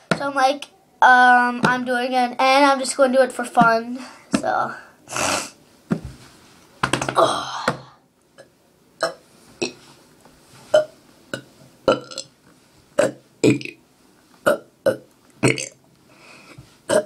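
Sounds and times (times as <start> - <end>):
person burping: 7.1 - 7.8, 9.0 - 9.8, 11.9 - 12.3, 13.0 - 13.8, 14.5 - 15.8.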